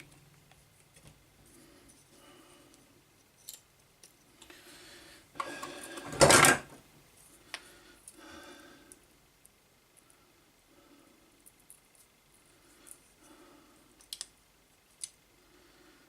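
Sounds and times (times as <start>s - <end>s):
plastic parts clicking and rubbing: 14.0s - 15.2s.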